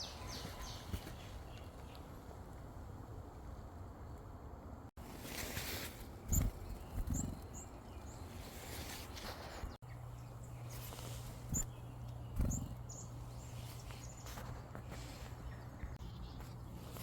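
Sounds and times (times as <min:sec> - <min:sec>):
birds chipping: 0:00.0 - 0:02.6, 0:05.4 - 0:17.0.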